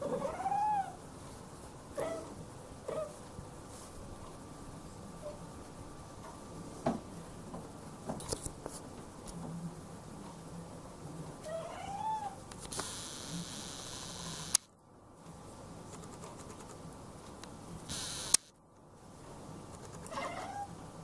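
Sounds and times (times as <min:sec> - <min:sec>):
cat meowing: 0:11.5 - 0:12.4, 0:20.1 - 0:20.7
sharp clicks: 0:12.5 - 0:14.7, 0:17.9 - 0:18.5.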